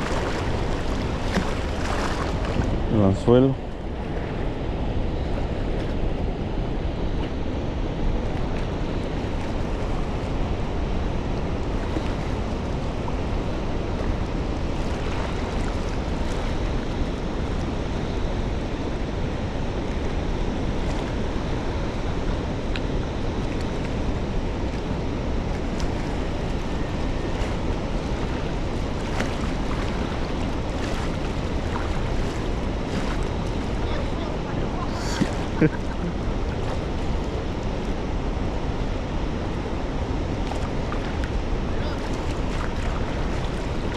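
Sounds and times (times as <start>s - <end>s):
wind buffeting microphone: 0.0s - 43.9s.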